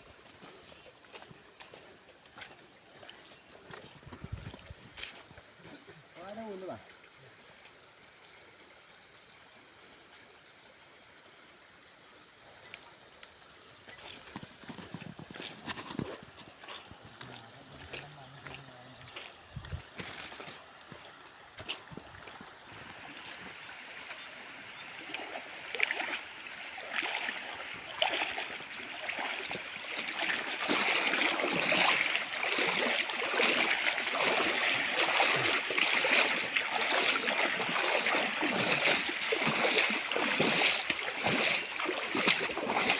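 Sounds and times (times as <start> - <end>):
stream water rushing: 21.9 - 42.9.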